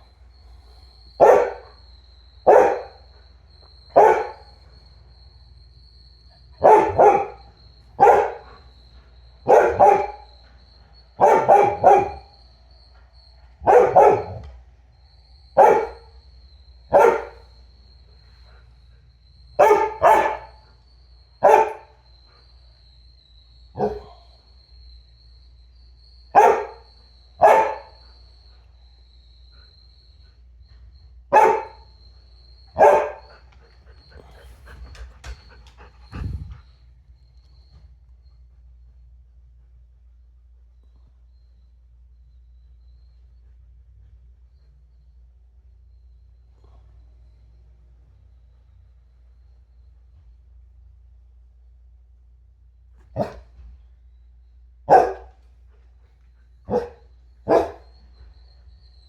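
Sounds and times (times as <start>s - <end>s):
dog barking: 1.2s - 1.8s, 2.4s - 3.2s, 3.9s - 4.6s, 6.3s - 8.7s, 9.4s - 10.4s, 11.2s - 12.4s, 13.6s - 14.6s, 15.6s - 16.2s, 16.9s - 17.5s, 19.6s - 20.8s, 21.4s - 22.0s, 23.7s - 24.4s, 26.3s - 28.1s, 31.3s - 31.9s, 32.7s - 33.4s, 53.1s - 53.5s, 54.9s - 55.4s, 56.7s - 58.0s.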